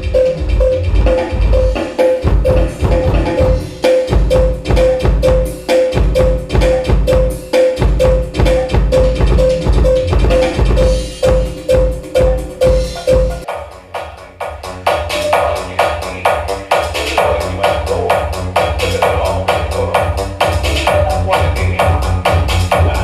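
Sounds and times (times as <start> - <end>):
loud music with heavy bass beat: 0.0 - 23.0
high knocking note: 8.0 - 14.6.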